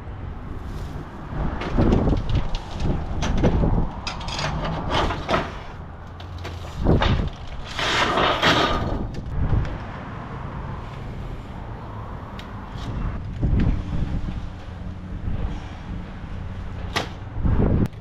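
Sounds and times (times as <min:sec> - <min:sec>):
debris knocks and scrapes: 0:00.7 - 0:09.8.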